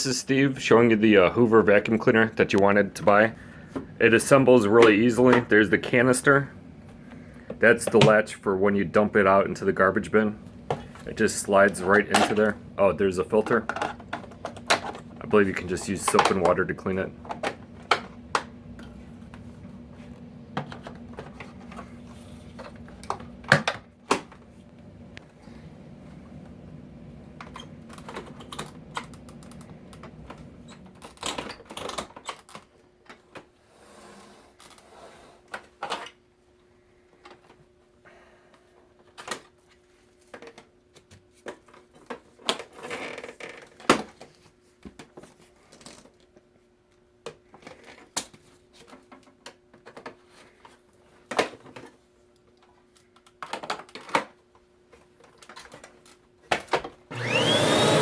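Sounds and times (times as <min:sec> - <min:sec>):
plastic parts clicking and knocking: 0:13.4 - 0:15.2, 0:15.8 - 0:18.6, 0:27.4 - 0:33.5, 0:40.3 - 0:46.2, 0:47.2 - 0:52.0, 0:52.6 - 0:57.0.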